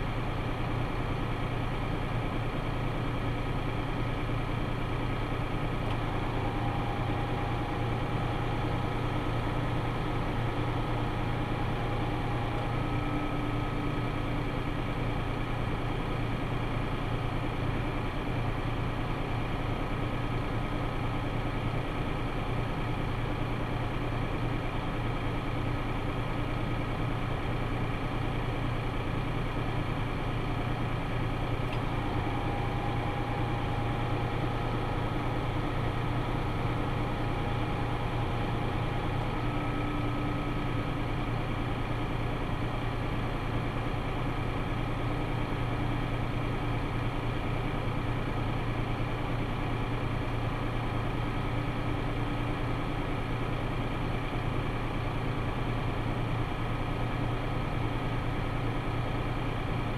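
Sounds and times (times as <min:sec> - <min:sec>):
tractor engine humming: 0:00.0 - 0:59.9.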